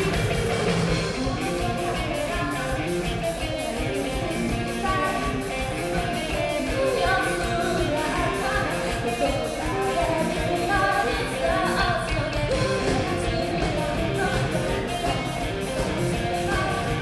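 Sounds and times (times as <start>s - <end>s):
guitar: 0.0s - 17.0s
steady drum beat: 0.0s - 17.0s
person singing lead vocal: 0.9s - 17.0s.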